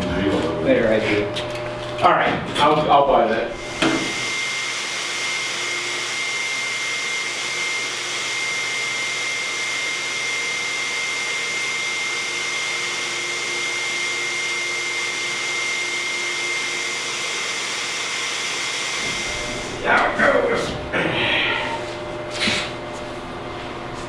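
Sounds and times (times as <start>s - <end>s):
high-pitched machine whine: 13.4s - 22.5s.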